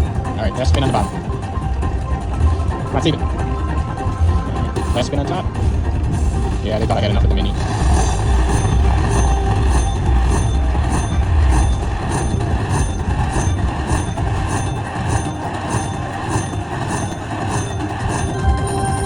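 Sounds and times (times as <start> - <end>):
low rumble: 0.0 - 15.1
slot machine chiming jingle: 0.0 - 19.0.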